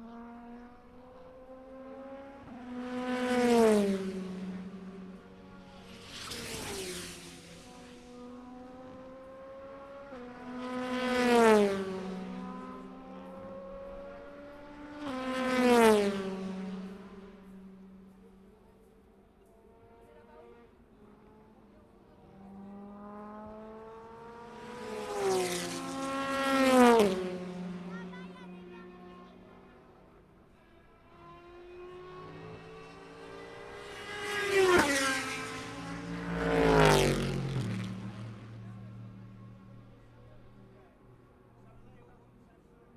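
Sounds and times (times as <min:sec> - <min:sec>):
racing cars passing at full throttle: 0:00.0 - 0:18.5, 0:19.6 - 0:42.9.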